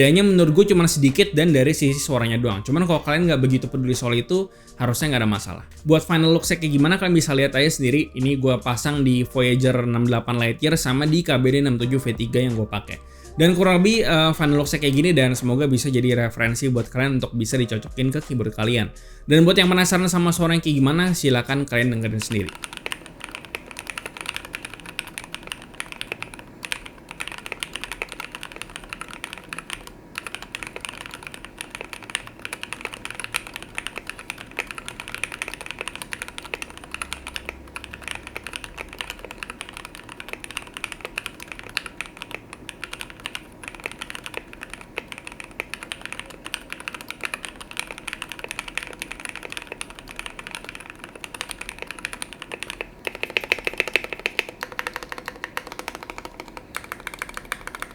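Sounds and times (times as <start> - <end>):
mechanical keyboard typing: 0.0 - 4.3, 5.0 - 12.9, 13.5 - 16.9, 19.5 - 57.9.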